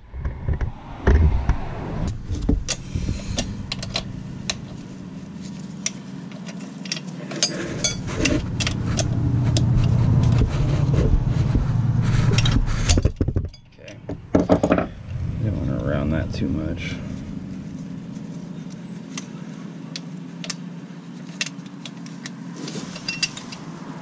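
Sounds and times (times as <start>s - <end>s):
steady low rumble: 0.0s - 6.4s, 7.8s - 19.1s.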